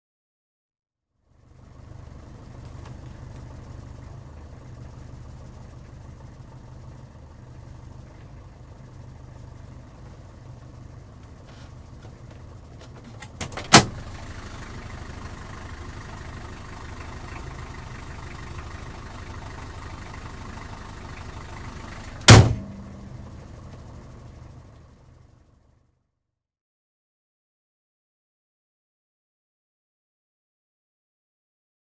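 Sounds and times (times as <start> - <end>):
car engine idling: 1.3 - 26.0
car door slamming: 12.9 - 14.1, 22.2 - 23.9.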